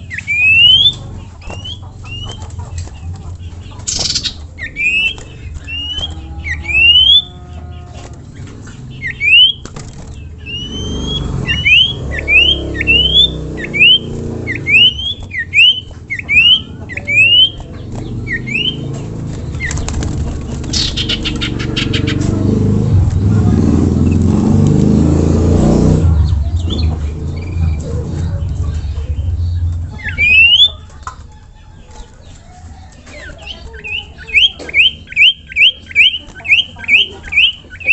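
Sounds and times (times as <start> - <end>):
bird whistling rising notes: 0.0 - 2.4, 4.0 - 7.9, 8.9 - 9.7, 10.4 - 17.6, 18.2 - 18.9, 28.4 - 31.0
low rumble: 17.8 - 32.3.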